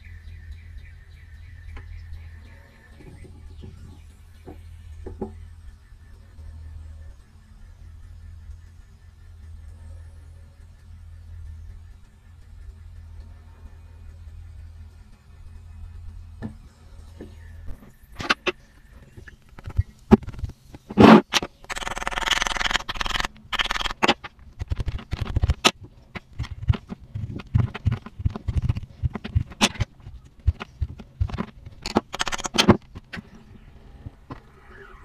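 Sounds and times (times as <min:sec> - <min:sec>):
small tool tapping and clicking: 0:19.6 - 0:33.2
tool scraping: 0:20.2 - 0:33.6.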